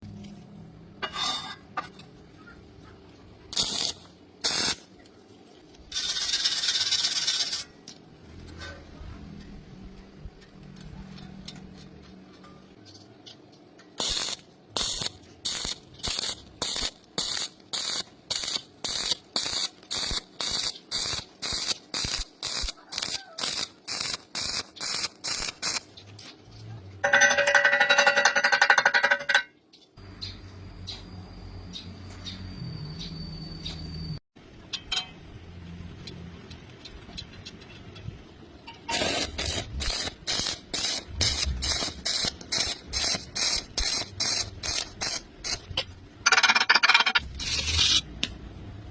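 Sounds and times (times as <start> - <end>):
welding arc bursts: 3.5 - 4.9, 5.9 - 7.8, 14.0 - 25.9, 38.9 - 45.7.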